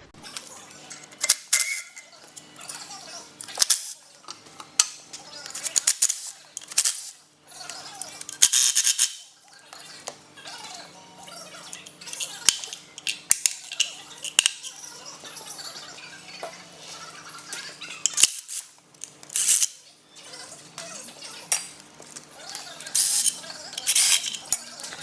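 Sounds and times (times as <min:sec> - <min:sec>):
tools rattling: 0:12.0 - 0:14.7, 0:18.0 - 0:18.7, 0:22.9 - 0:24.9
metal tools clinking on engine parts: 0:23.0 - 0:24.8.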